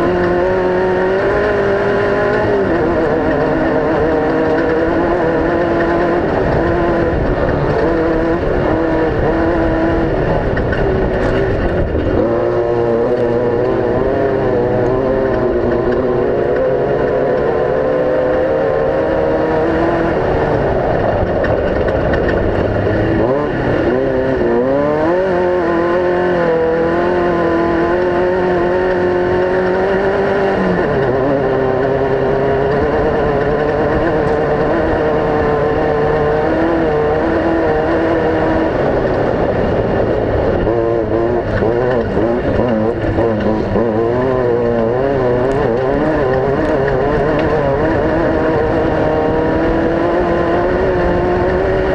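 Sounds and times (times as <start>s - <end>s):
off-road race engines running: 0.0s - 51.9s.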